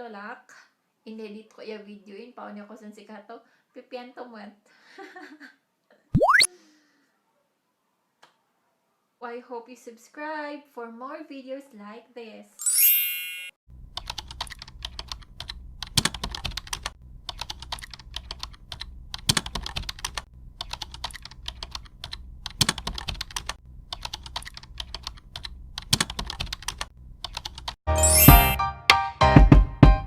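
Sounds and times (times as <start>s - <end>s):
typing on a keyboard: 13.9s - 27.8s
melodic music: 27.9s - 29.4s.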